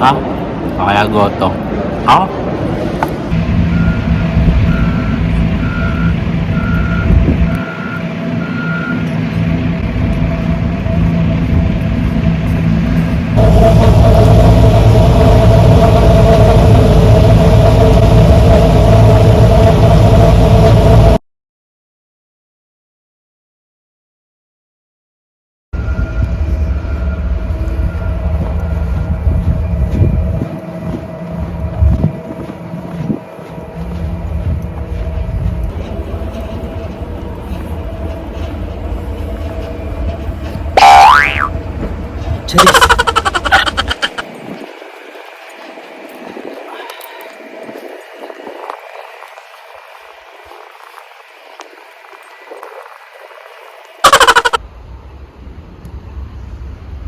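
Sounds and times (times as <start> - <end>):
engine rumble: 0.0 - 21.2, 25.8 - 57.0
reversing alarm beeping: 3.5 - 9.2, 25.8 - 32.4, 40.8 - 41.5, 54.0 - 54.6.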